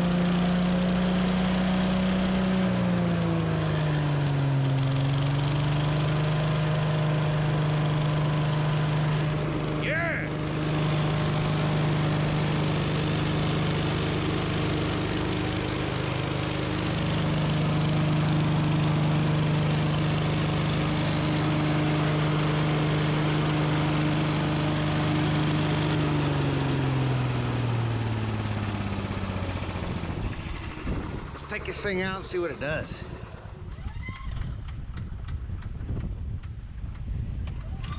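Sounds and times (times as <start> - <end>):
small gasoline engine running: 0.0 - 36.6.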